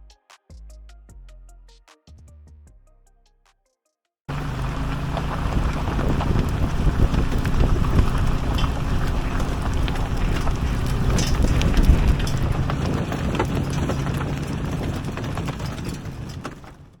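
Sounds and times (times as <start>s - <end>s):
wind buffeting microphone: 4.3s - 17.0s.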